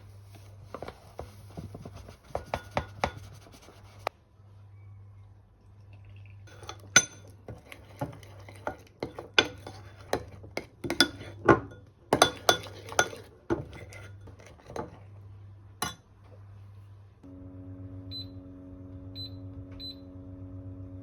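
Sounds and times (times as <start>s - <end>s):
faint low hum: 3.3s - 6.6s
cutlery clinking on dishes: 6.5s - 15.0s.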